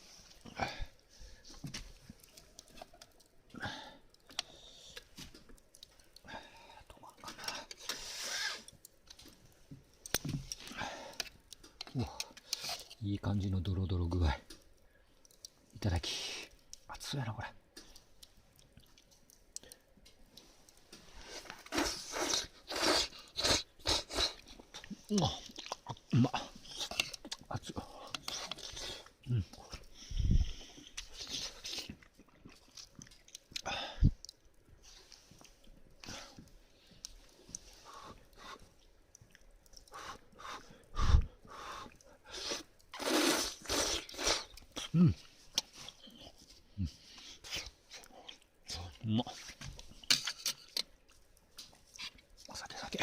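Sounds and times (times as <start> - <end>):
person chewing noodles: 0.0 - 13.0, 17.8 - 53.0
person slurping noodles: 21.3 - 25.8, 42.3 - 45.2.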